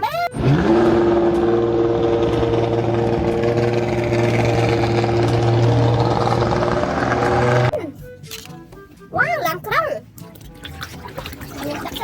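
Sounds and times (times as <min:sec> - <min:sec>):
vehicle engine running steadily: 0:00.3 - 0:07.8.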